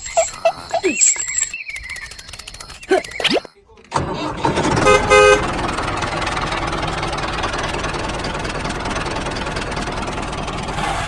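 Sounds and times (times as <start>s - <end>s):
small tractor engine idling: 3.9s - 11.0s.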